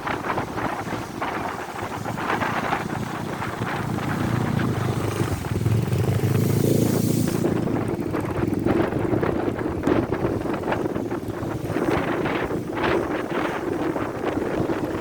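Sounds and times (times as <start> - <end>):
rough sea surf: 0.0 - 15.0
wind buffeting microphone: 0.0 - 15.0
vehicle engine running: 1.3 - 12.4.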